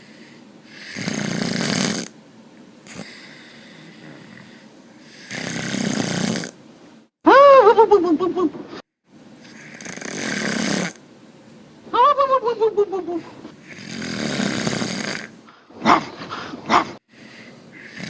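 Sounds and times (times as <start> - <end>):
short snorts: 0.7 - 2.1, 2.9 - 6.6, 9.4 - 11.0, 13.6 - 17.0
loud snoring: 0.7 - 2.2, 5.1 - 6.6, 9.4 - 11.0, 13.6 - 15.4, 17.8 - 18.0.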